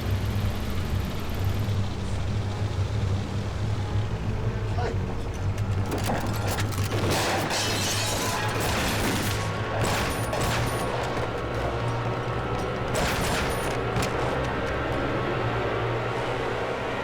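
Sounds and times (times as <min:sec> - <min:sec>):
crashing impacts: 0:05.8 - 0:15.5.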